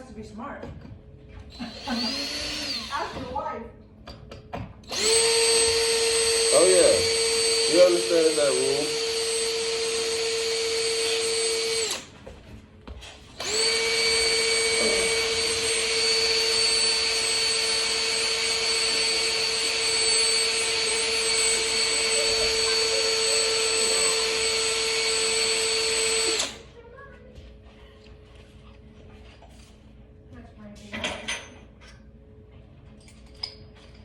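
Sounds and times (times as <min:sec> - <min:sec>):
electric power drill running: 0:01.5 - 0:03.5, 0:04.8 - 0:12.2, 0:13.3 - 0:26.7.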